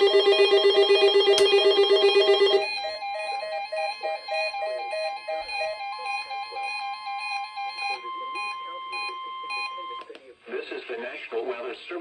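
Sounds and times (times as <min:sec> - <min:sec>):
two-note beeping alarm: 0:00.0 - 0:09.9.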